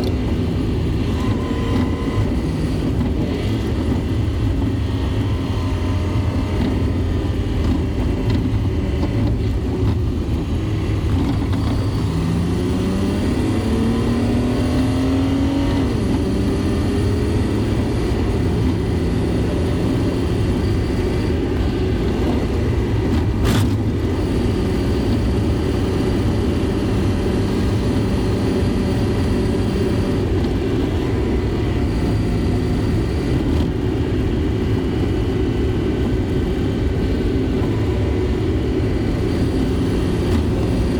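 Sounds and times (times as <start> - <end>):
road noise: 0.0 - 40.9
truck diesel engine running: 16.1 - 40.9.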